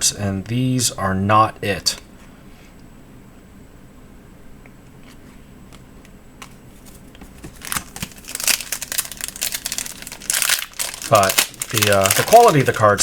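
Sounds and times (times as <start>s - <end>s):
card pack wrapper crinkling and tearing: 7.4s - 13.0s.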